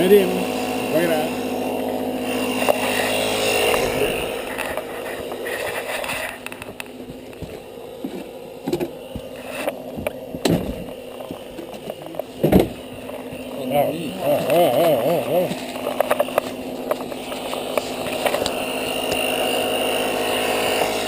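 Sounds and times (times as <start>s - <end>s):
motor running: 0.0s - 21.0s
knocks and clicks of tire work: 4.5s - 13.5s, 14.4s - 19.3s.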